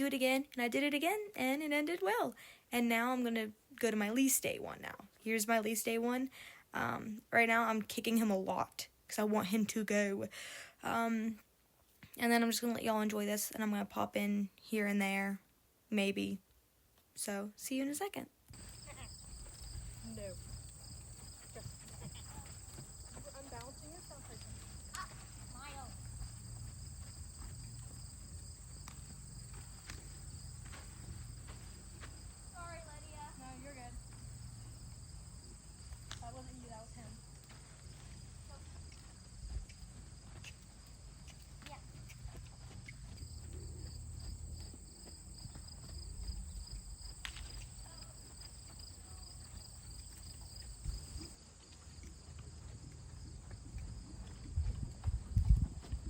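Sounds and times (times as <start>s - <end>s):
high insect chorus: 18.6s - 55.6s.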